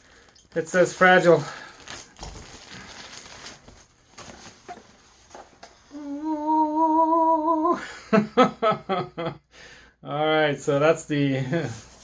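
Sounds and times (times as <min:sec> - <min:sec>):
man humming: 0:05.9 - 0:07.8.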